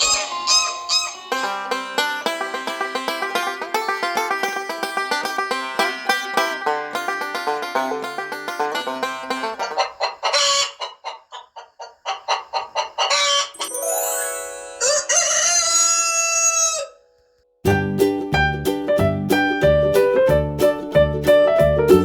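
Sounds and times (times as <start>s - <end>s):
chickens clucking: 0.0s - 13.6s
rooster crowing: 14.8s - 17.1s.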